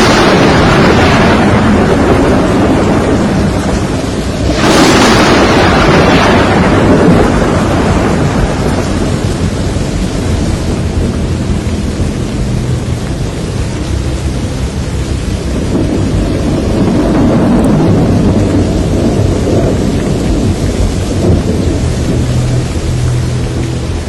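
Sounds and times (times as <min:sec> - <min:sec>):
crash of thunder: 0:00.0 - 0:11.5, 0:15.5 - 0:22.7
heavy rain: 0:00.0 - 0:24.0.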